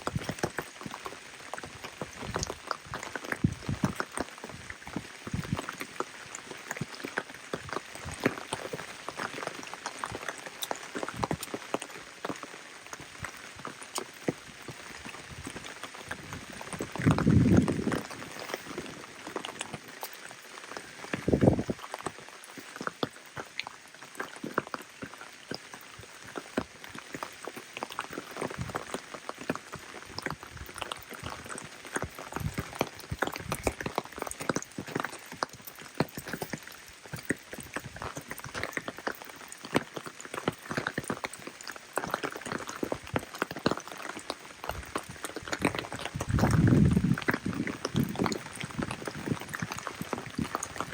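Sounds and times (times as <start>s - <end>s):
rain falling: 0.0s - 50.9s.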